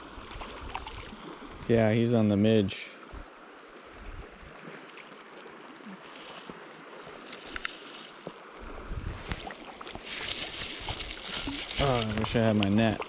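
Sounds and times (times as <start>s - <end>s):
river water running: 0.0s - 13.0s
wind buffeting microphone: 8.7s - 9.6s.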